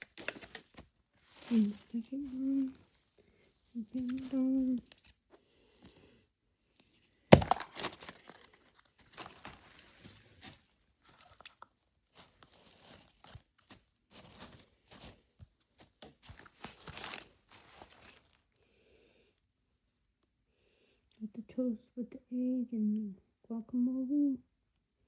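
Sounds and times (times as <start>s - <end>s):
plastic capsule cracking open: 0.0s - 0.8s, 7.3s - 9.7s
plastic packaging crinkling and tearing: 0.0s - 2.8s, 7.3s - 15.2s, 15.8s - 18.4s.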